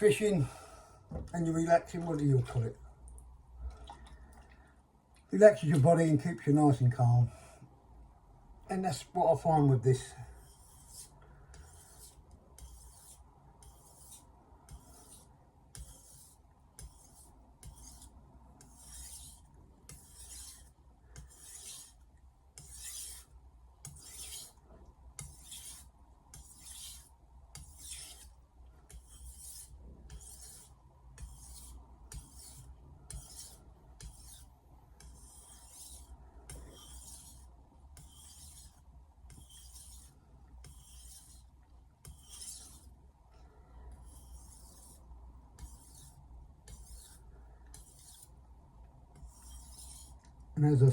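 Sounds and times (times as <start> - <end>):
knife rasping on whetstone: 10.4 - 22.0, 22.6 - 24.6, 25.2 - 42.9, 44.0 - 48.4, 49.1 - 50.3.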